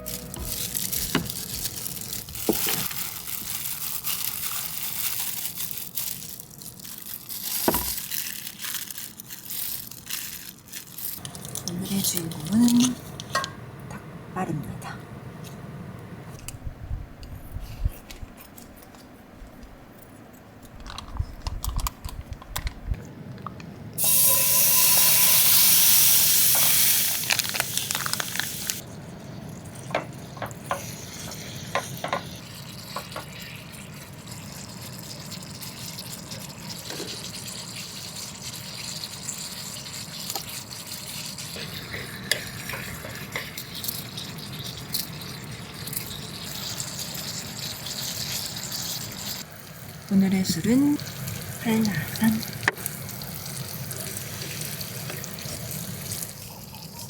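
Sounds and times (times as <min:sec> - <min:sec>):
things being handled: 0:00.0 - 0:13.6, 0:17.8 - 0:23.6.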